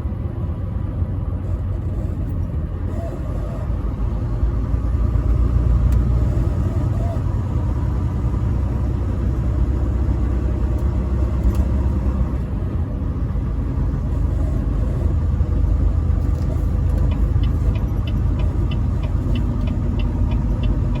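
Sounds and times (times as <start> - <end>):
truck engine and road rumble: 0.0 - 21.0
light ticking: 16.9 - 21.0.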